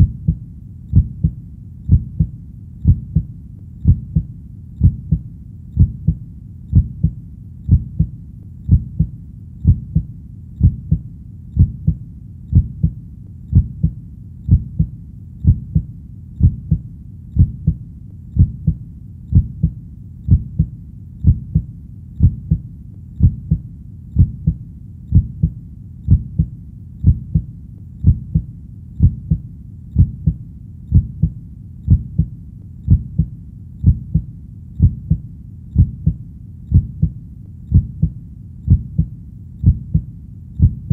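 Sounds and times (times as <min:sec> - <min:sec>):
heartbeat thumps: 0:00.0 - 0:40.9.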